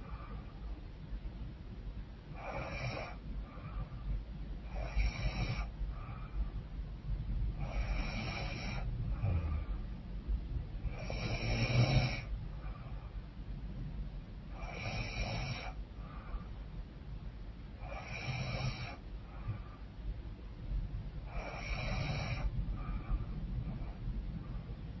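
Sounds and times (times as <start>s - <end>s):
faint breaths: 0.0s - 25.0s
woman snoring: 2.4s - 3.2s, 7.7s - 9.8s, 10.9s - 12.3s, 14.6s - 15.8s, 17.8s - 19.0s, 21.3s - 22.5s
low rumble: 5.7s - 7.7s, 8.8s - 11.0s, 19.1s - 25.0s.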